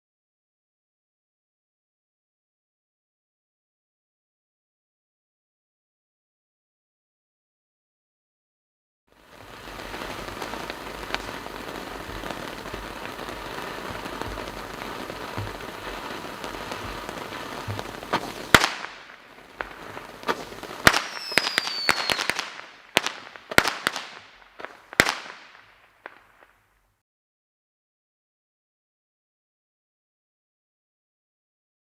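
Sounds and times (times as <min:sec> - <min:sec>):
firework hiss and crackle: 0:09.1 - 0:26.8
loud firework reports: 0:09.2 - 0:25.5
falling whistle: 0:21.1 - 0:22.3.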